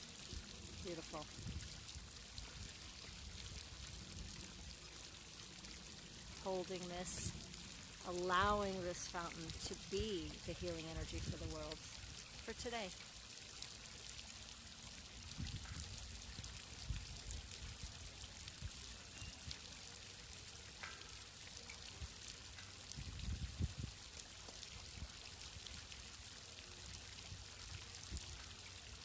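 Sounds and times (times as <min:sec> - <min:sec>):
fountain water splashing: 0:00.0 - 0:29.0
water droplet ticks: 0:20.7 - 0:22.9.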